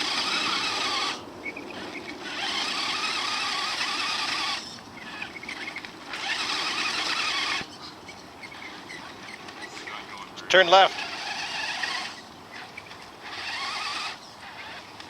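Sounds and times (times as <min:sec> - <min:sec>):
electric motor whining: 0:00.0 - 0:15.0.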